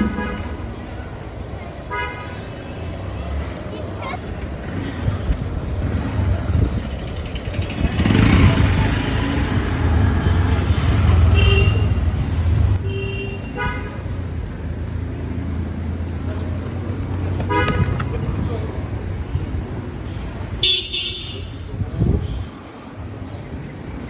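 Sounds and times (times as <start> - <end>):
vehicle engine rumble: 0.0 - 24.0
vehicle passing: 2.9 - 12.8.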